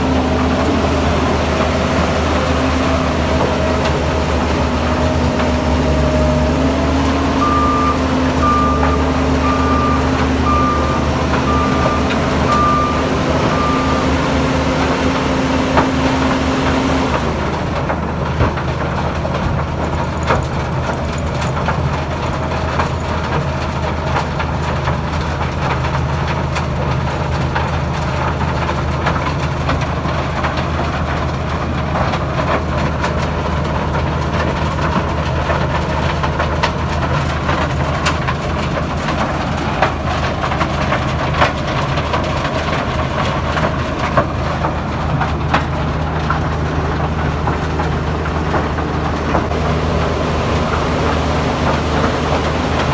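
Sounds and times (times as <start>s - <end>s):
diesel machinery running: 0.0s - 52.9s
reversing beeper alarm: 2.4s - 17.2s, 49.5s - 52.9s.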